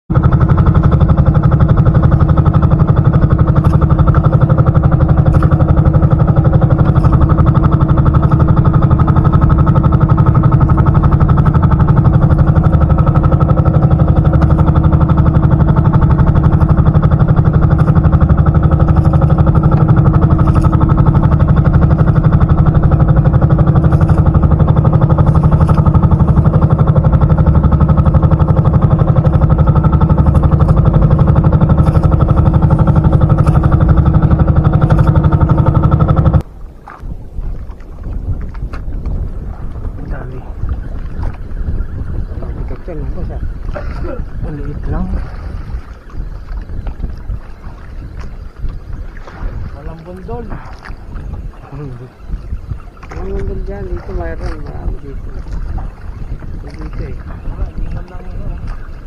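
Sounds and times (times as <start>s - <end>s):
small engine running: 0.1s - 36.4s.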